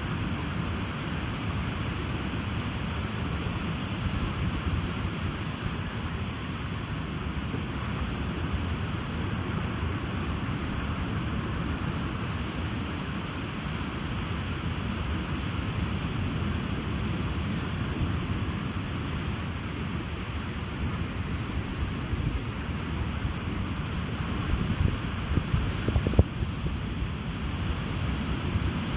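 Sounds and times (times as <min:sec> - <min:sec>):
ocean surf washing: 0:00.0 - 0:28.9
wind buffeting microphone: 0:23.8 - 0:28.9.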